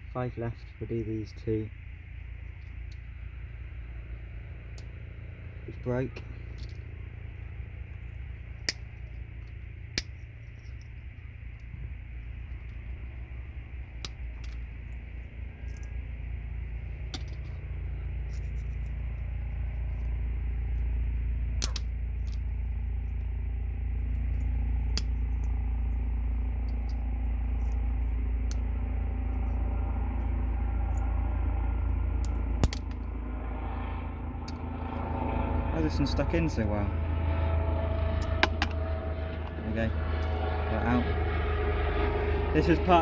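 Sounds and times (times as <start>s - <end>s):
steady low rumble: 0.0s - 43.0s
sharp clicks of parts snapping out: 21.6s - 22.4s, 24.1s - 25.6s, 32.2s - 33.1s, 38.2s - 38.8s.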